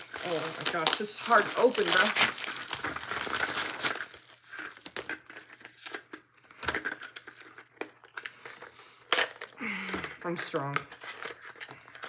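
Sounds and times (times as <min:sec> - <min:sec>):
packaging crinkling and tearing: 0:00.0 - 0:09.6, 0:10.3 - 0:12.0
packaging sharp cracks: 0:00.0 - 0:09.6.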